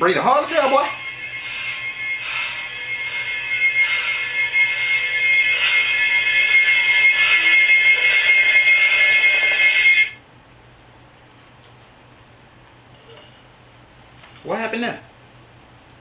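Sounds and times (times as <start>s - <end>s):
shrill pulsing alarm ringing: 0.0s - 10.2s.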